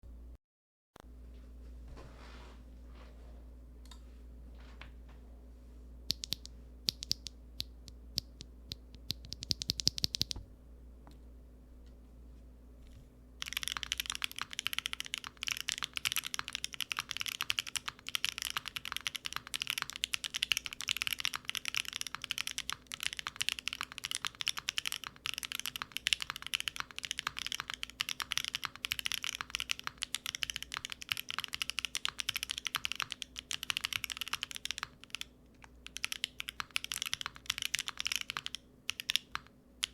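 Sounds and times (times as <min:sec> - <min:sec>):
typing on mechanical keyboard: 0:06.1 - 0:07.3, 0:08.9 - 0:10.4, 0:13.4 - 0:39.9.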